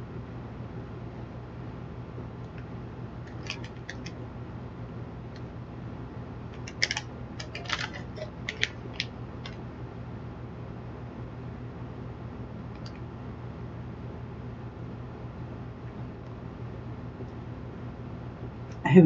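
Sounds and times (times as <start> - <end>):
steady low hum: 0.0 - 19.0
packaging crackling: 6.6 - 9.6.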